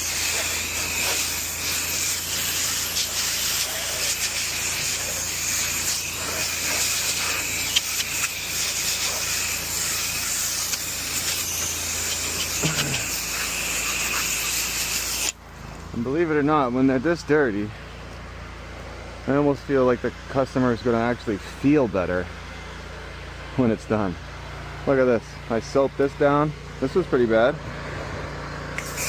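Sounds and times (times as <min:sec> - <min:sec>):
pressure washer spray hissing: 0:00.0 - 0:15.4, 0:28.7 - 0:29.0
washer motor hum: 0:00.0 - 0:16.6.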